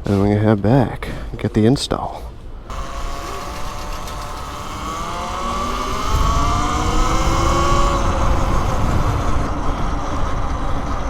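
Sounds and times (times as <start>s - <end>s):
electric dirt bike motor whining: 2.7s - 11.0s
wind rumble on microphone: 2.7s - 11.0s.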